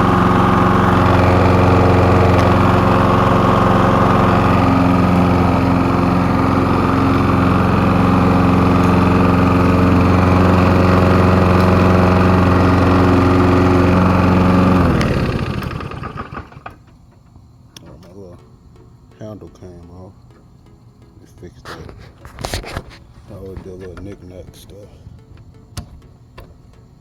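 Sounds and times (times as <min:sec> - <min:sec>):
lawnmower engine running: 0:00.0 - 0:27.0.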